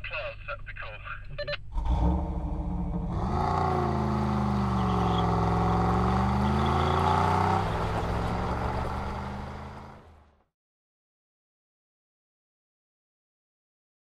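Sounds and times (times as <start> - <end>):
car engine revving: 1.6 - 10.4.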